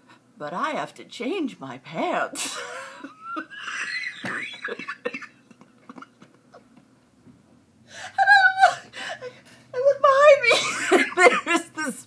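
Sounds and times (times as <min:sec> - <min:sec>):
woman laughing: 0:02.4 - 0:06.2, 0:08.1 - 0:12.0.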